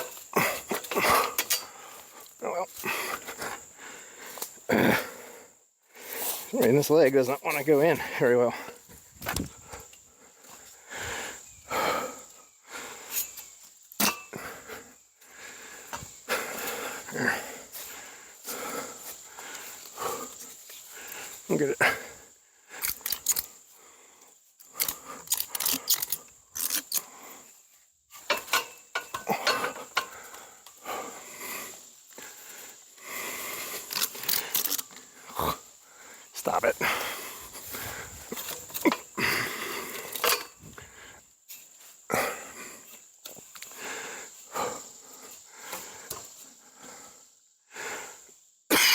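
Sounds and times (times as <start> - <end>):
man breathing heavily: 0.0 - 6.6, 8.0 - 48.5
metal ladder stand clicks and knocks: 14.0 - 14.3, 28.2 - 30.2, 40.1 - 40.6.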